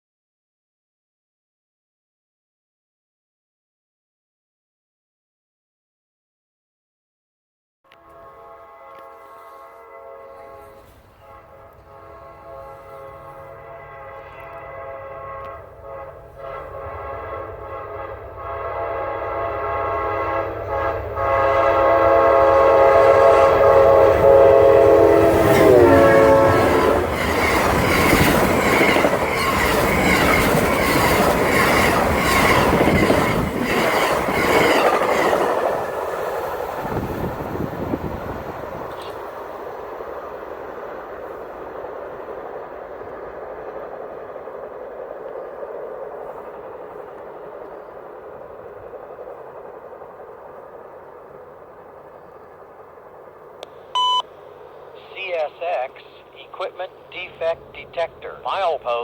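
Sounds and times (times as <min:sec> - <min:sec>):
train horn blasts: 0:07.9 - 0:30.7
wheels clattering over rail joints: 0:25.4 - 0:36.8.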